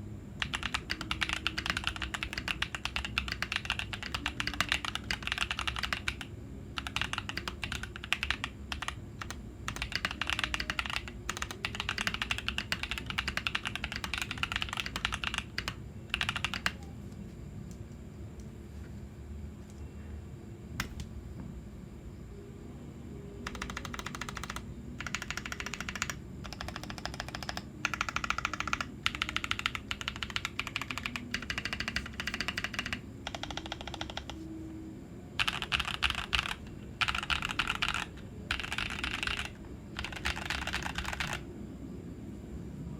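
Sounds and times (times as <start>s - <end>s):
fast typing on mechanical keyboard: 0.4s - 16.9s, 23.4s - 34.4s, 35.4s - 41.5s.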